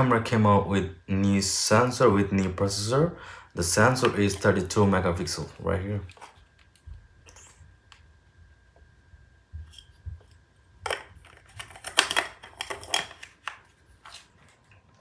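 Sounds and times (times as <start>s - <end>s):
sharp clicks and rustles: 9.7s - 14.9s.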